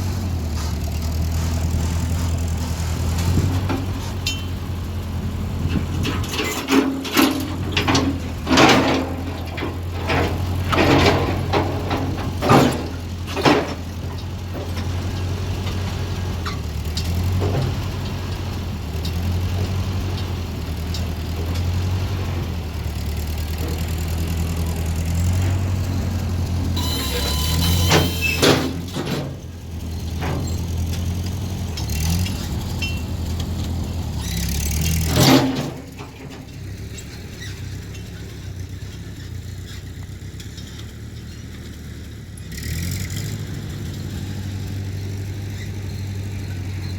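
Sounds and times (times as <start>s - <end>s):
loader engine running: 0.0s - 46.9s
metal clanks: 0.5s - 4.8s, 5.6s - 15.8s, 23.4s - 41.7s.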